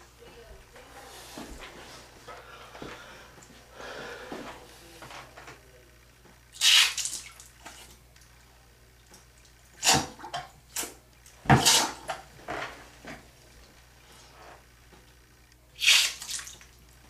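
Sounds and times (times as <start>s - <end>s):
water splashing: 15.8s - 16.8s.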